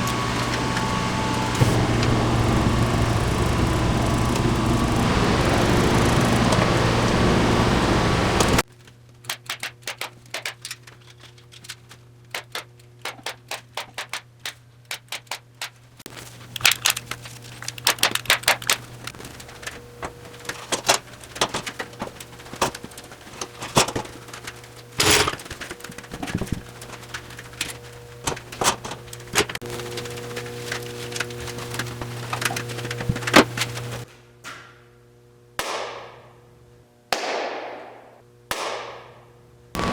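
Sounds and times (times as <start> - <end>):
steady low hum: 0.0 - 8.7, 15.9 - 39.9
sharp clicks and knocks of hand work: 9.2 - 15.9.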